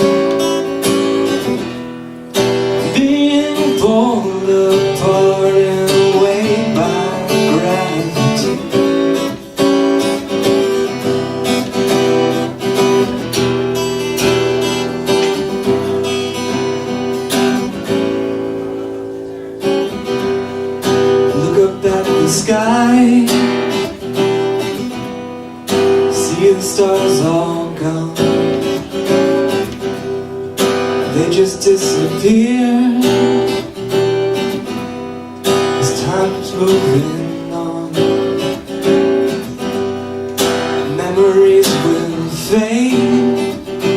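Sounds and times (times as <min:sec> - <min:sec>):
acoustic guitar strummed and picked: 0:00.0 - 0:43.9.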